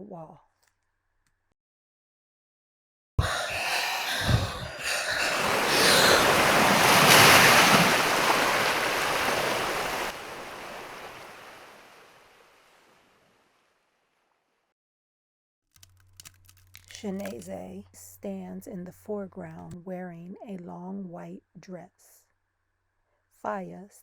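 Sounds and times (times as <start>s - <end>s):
waves crashing against a wall: 4.2s - 12.0s.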